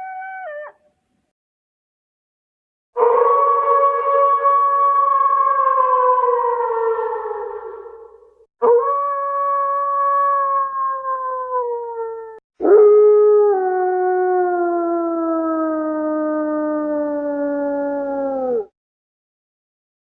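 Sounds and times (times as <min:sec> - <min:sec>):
dog howling: 0:08.6 - 0:18.7.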